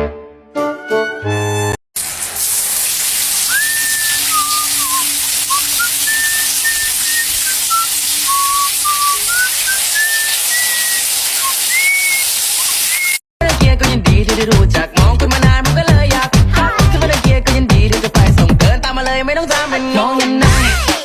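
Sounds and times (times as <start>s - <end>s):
whistled tune: 3.5s - 13.2s.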